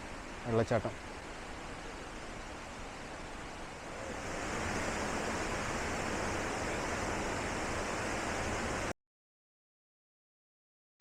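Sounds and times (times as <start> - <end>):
waterfall rushing: 0.0 - 8.9.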